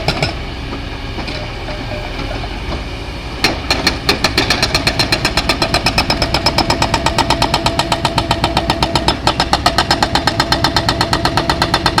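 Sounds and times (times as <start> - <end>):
excavator engine running: 0.0 - 12.0
hydraulic breaker hammering: 3.4 - 12.0.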